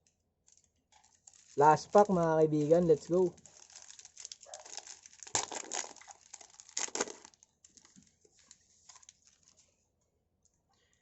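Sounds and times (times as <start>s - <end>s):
plastic wrapper crinkling: 0.4s - 9.7s
wrapper ripping: 0.5s - 9.7s.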